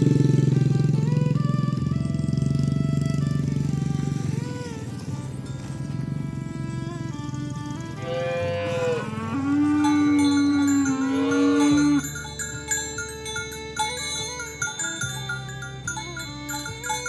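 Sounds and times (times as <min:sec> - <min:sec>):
background music with chimes: 0:04.0 - 0:17.0
cow mooing: 0:08.0 - 0:12.2.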